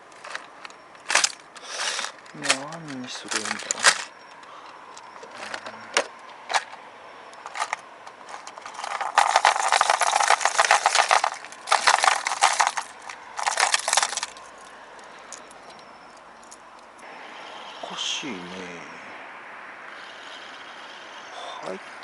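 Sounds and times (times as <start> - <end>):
fishing tackle clicking and rattling: 0.1 - 6.8, 7.4 - 17.0.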